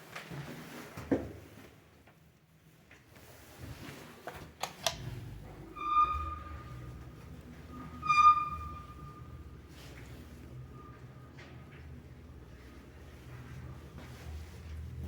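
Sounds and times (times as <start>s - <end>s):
lift rumbling: 4.9s - 15.0s
high piercing squeak: 5.4s - 9.7s.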